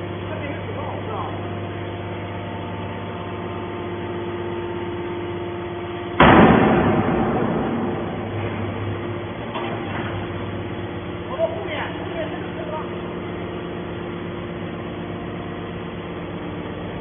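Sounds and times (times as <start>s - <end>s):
baler machine humming: 0.0s - 17.0s
sudden loud burst of noise: 6.2s - 9.4s.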